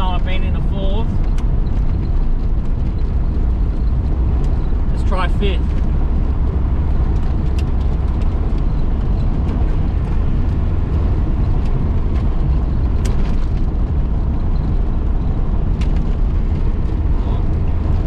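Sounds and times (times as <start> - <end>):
car engine and road rumble: 0.0 - 18.0.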